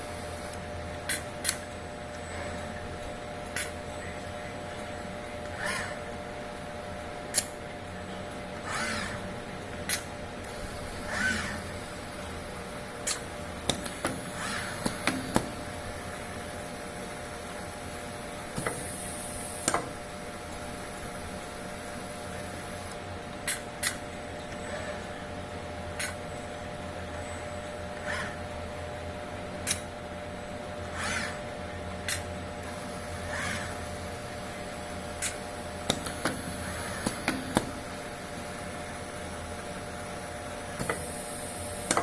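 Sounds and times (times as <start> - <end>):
electrical hum: 0.0 - 42.0
sharp mechanical clicks: 0.5 - 1.7, 7.3 - 7.6, 35.2 - 37.8, 40.8 - 42.0
robot arm servos whining: 5.6 - 6.0, 18.6 - 19.9, 28.0 - 28.4, 31.0 - 31.4, 33.2 - 33.8, 40.8 - 42.0.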